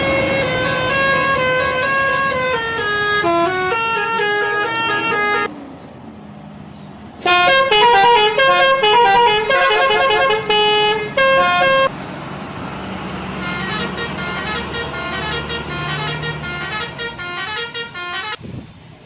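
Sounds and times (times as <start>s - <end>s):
musical air horn tune: 0.0s - 5.5s, 7.2s - 11.9s, 13.4s - 18.4s.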